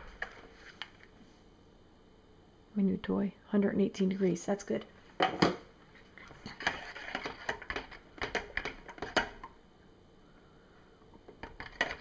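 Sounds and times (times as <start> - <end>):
small objects clicking and tapping: 6.5 - 9.6.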